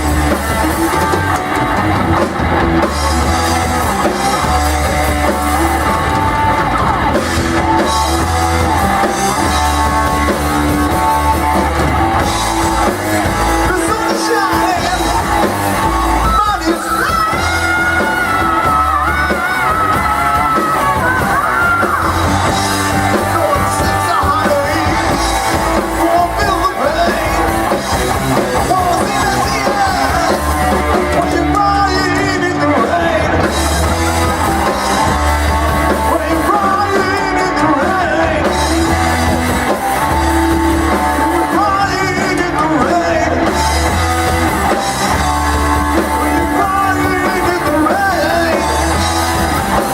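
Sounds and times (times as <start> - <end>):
bass guitar: 0.0 - 49.9
drums: 0.0 - 49.9
electric guitar: 0.0 - 49.9
person singing: 12.7 - 49.9.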